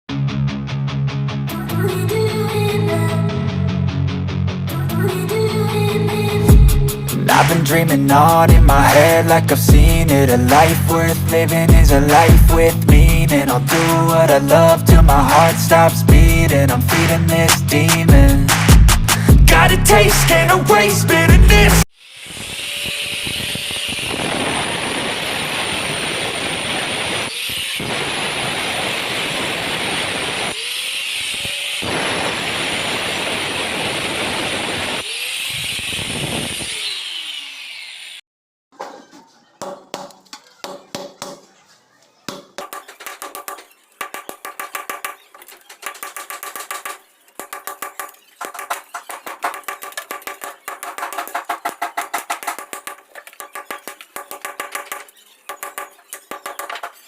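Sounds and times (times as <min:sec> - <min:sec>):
power tool running: 0:22.0 - 0:38.2.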